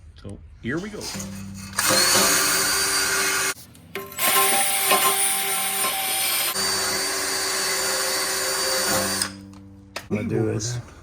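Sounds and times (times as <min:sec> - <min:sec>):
wire wheel scraping metal: 0:00.8 - 0:06.2
power tool whine: 0:01.7 - 0:09.4.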